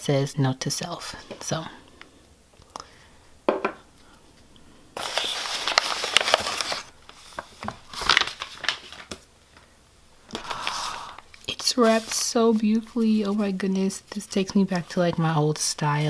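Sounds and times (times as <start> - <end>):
paper wrapping crinkling: 5.0 - 9.7, 10.3 - 16.0.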